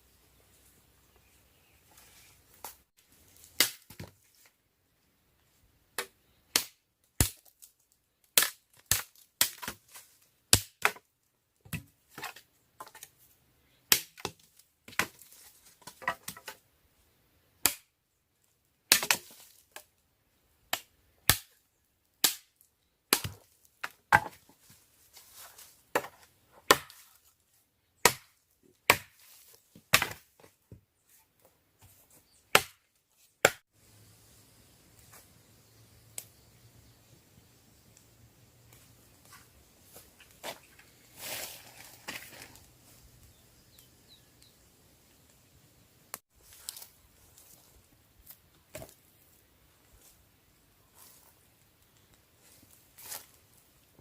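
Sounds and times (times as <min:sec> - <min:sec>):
wood chopping blows: 0:32.5 - 0:32.8.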